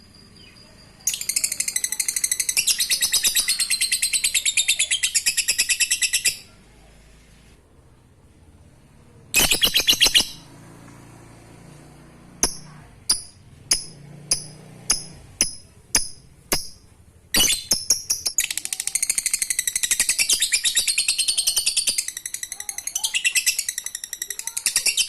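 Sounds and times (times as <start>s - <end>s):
lovebird sharp chirps: 0.1s - 6.5s, 9.3s - 10.5s, 12.4s - 25.0s
lovebird rapid chatter: 1.1s - 6.5s, 9.3s - 10.5s, 17.4s - 25.0s.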